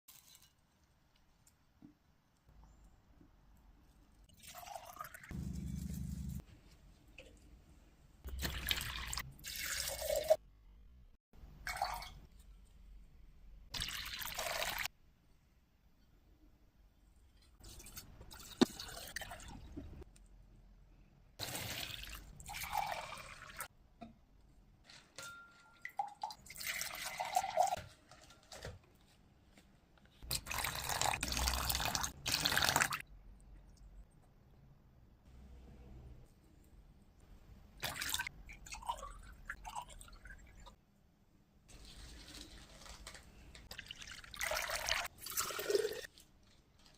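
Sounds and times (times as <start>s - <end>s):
water pouring: 4.3s - 6.4s, 8.3s - 10.4s, 11.6s - 12.2s, 13.8s - 14.9s, 17.6s - 20.0s, 21.4s - 23.7s, 25.8s - 27.8s, 30.3s - 33.0s, 37.8s - 40.7s, 41.7s - 46.9s.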